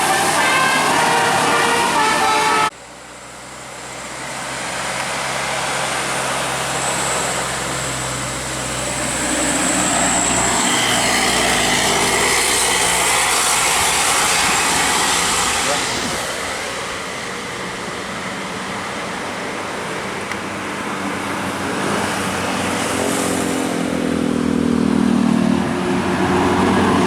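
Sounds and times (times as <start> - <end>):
musical air horn playing a tune: 0.0 - 2.7
large vehicle passing: 0.0 - 27.0.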